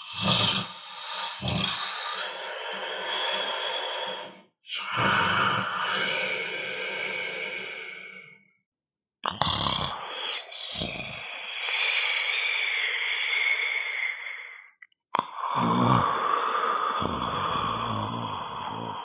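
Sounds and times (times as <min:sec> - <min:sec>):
people snoring: 0:00.0 - 0:08.2, 0:09.2 - 0:11.7, 0:15.2 - 0:19.0.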